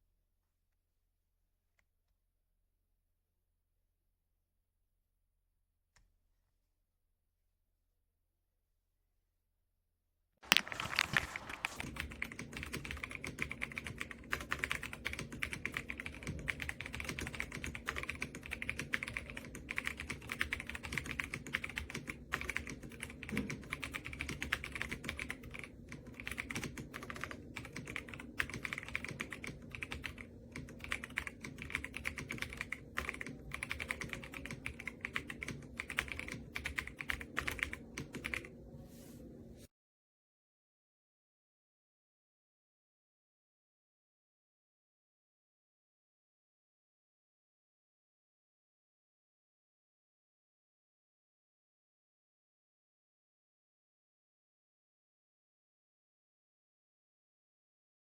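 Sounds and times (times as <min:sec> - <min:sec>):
fast typing on mechanical keyboard: 0:10.5 - 0:38.5.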